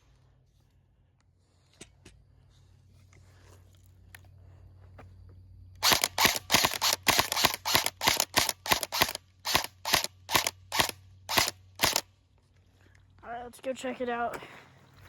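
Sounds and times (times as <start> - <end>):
airsoft gun shots: 5.8 - 12.0.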